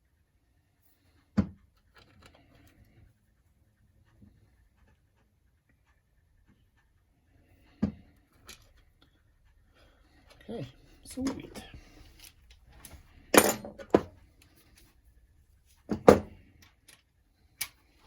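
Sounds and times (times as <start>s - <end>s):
tools clicking and scraping: 1.8s - 2.8s, 8.2s - 9.1s, 11.2s - 14.9s, 15.7s - 18.0s.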